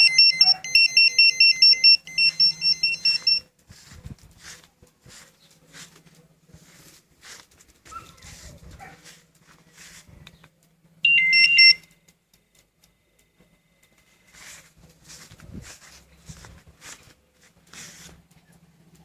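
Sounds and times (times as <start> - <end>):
motorcycle alarm chirps: 0.0 - 3.5, 11.0 - 12.0
faint rustling: 3.6 - 10.5, 13.9 - 19.0.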